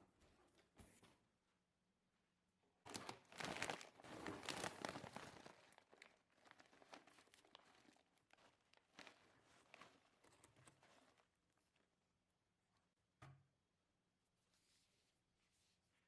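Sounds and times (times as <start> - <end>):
plastic packaging crinkling and tearing: 2.9 - 11.2.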